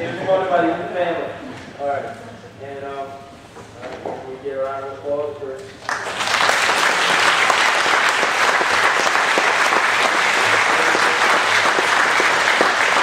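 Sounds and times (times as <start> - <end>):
crowd applauding: 5.8 - 13.0.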